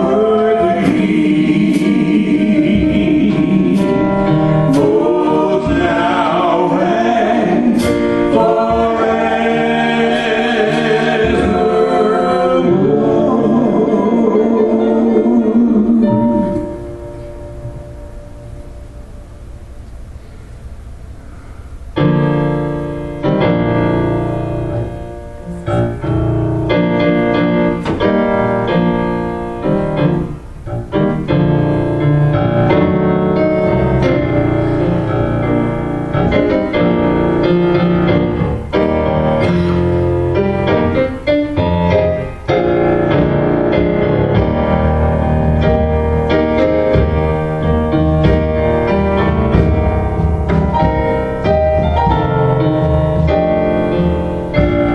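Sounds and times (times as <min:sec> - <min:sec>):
piano playing: 0:00.0 - 0:54.9.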